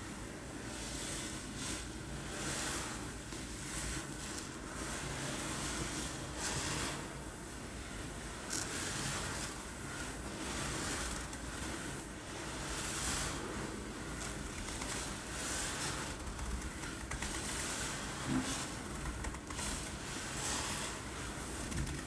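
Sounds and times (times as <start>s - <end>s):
rice rattling and rolling: 8.4s - 22.0s.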